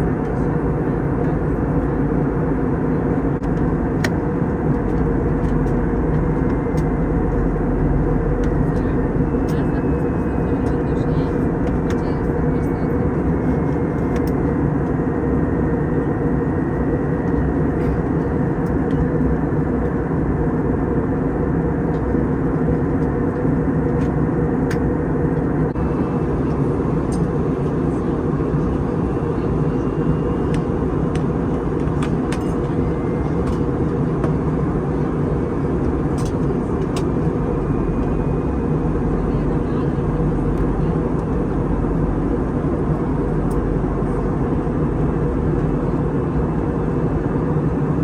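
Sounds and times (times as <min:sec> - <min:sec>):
faint whine: 0:00.0 - 0:48.0
vehicle interior rumble: 0:03.4 - 0:14.5.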